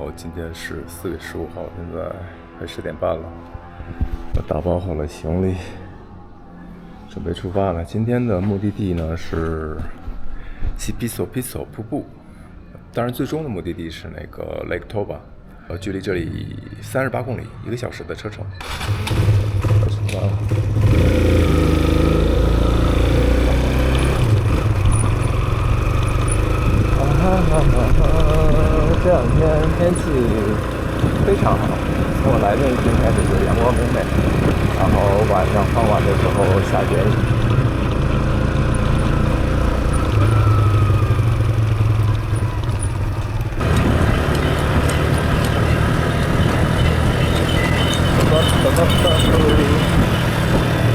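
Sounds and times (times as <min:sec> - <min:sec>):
road noise: 0:00.0 - 0:50.9
motorbike engine running: 0:18.7 - 0:50.9.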